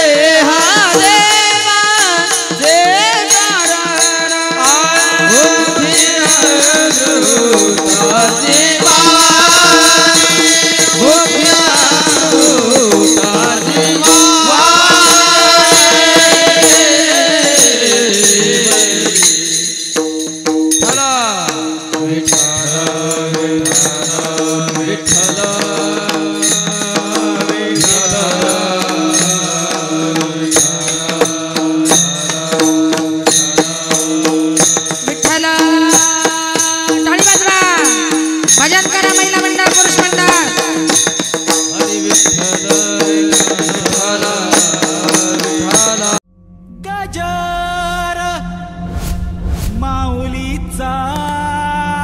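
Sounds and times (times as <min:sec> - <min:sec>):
drum: 0:00.0 - 0:52.0
person singing long gliding notes: 0:45.4 - 0:49.0, 0:49.7 - 0:52.0.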